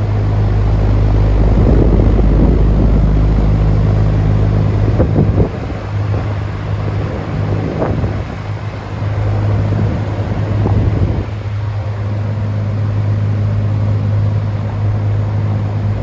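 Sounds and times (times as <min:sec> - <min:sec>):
fan motor humming with air rush: 0:00.0 - 0:16.0.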